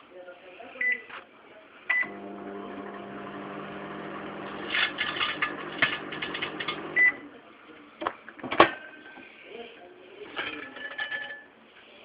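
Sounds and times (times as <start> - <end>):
microwave oven humming: 2.0 - 7.2.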